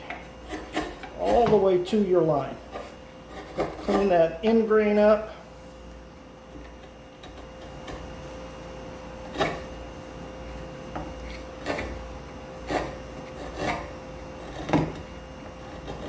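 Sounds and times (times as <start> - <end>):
chisel slicing wood: 0.5 - 1.6, 2.7 - 4.1, 9.3 - 9.6, 11.2 - 12.0, 12.6 - 16.0.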